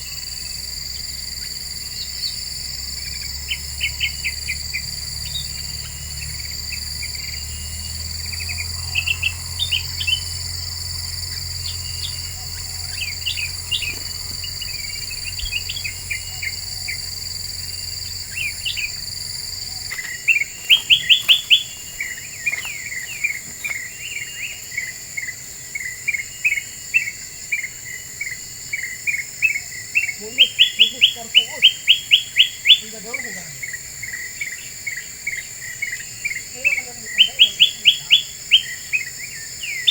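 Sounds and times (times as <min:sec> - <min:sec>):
low hum: 0:00.0 - 0:24.1
high insect drone: 0:00.0 - 0:39.9
bird chirping: 0:00.8 - 0:39.9.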